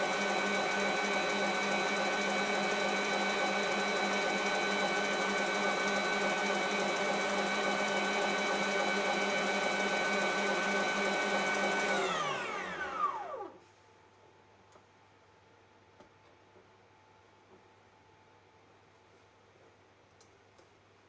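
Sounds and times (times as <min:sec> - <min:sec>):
electric mixer motor whine: 0:00.0 - 0:13.6.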